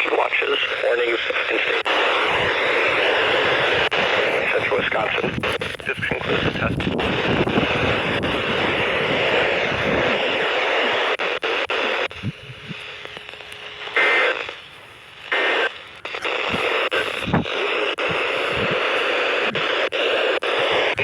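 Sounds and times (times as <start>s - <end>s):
radio static hiss: 0.0s - 21.0s
sharp clicks: 11.7s - 14.6s.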